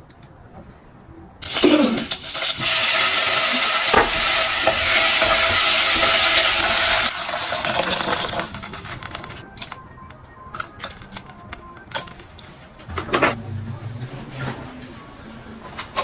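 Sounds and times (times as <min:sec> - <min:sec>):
food sizzling in hot oil: 0:01.4 - 0:08.4.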